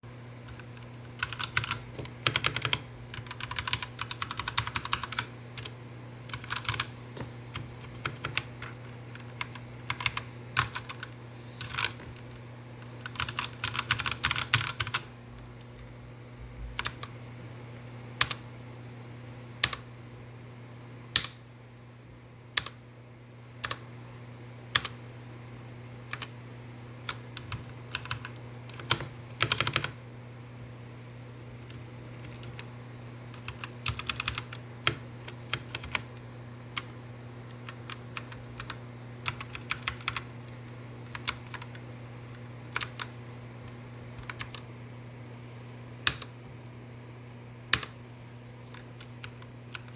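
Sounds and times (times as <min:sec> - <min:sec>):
mechanical keyboard typing: 0:00.4 - 0:15.1, 0:16.8 - 0:17.2, 0:18.2 - 0:18.4, 0:19.6 - 0:19.9, 0:21.2 - 0:21.4, 0:22.6 - 0:22.8, 0:23.6 - 0:23.9, 0:24.7 - 0:25.0, 0:26.1 - 0:26.4, 0:27.0 - 0:30.0, 0:31.6 - 0:32.7, 0:33.3 - 0:36.2, 0:36.8 - 0:44.7, 0:46.0 - 0:46.4, 0:47.7 - 0:48.0, 0:48.7 - 0:49.9.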